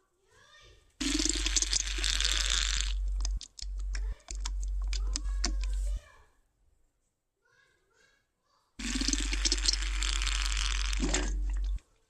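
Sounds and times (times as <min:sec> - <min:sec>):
steady low hum: 0:01.0 - 0:06.1
rapid sharp clicks: 0:02.9 - 0:05.8.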